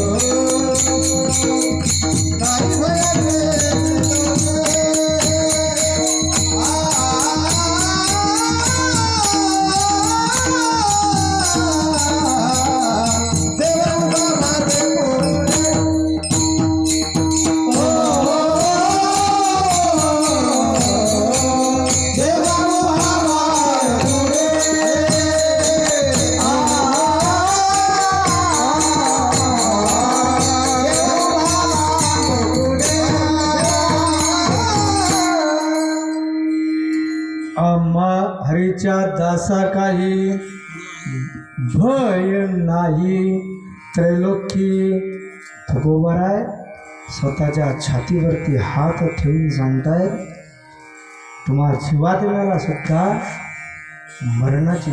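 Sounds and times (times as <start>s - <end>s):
small hand cymbals: 0.0s - 37.6s
person singing devotional melody: 0.0s - 54.9s
steady drone: 12.0s - 37.6s.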